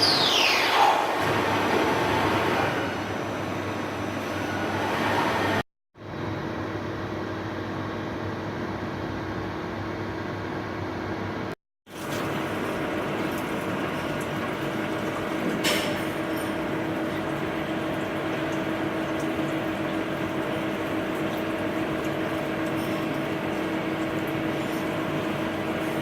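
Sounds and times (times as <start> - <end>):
lathe mechanical hum: 0.6 - 5.6, 12.4 - 26.0
coolant splashing and flowing: 11.9 - 26.0.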